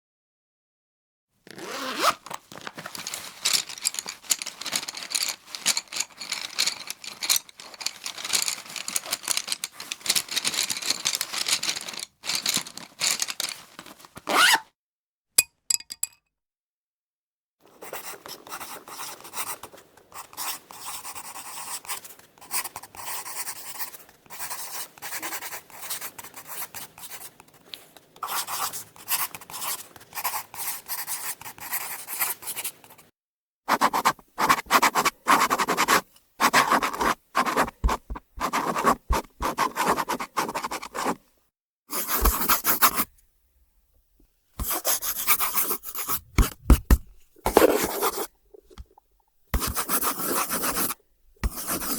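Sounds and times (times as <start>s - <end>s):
pencil writing on paper: 17.7s - 27.4s, 28.2s - 32.7s, 33.7s - 41.2s, 41.9s - 43.0s, 44.6s - 46.6s, 47.5s - 48.3s, 49.6s - 51.9s.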